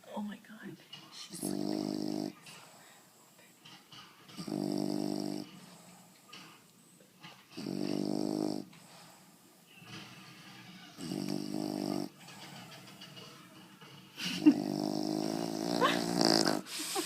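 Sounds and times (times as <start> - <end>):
dog breathing: 1.2 - 10.1
dog snoring: 1.3 - 2.8, 4.2 - 6.1, 7.5 - 9.4, 10.7 - 12.6, 14.3 - 16.7.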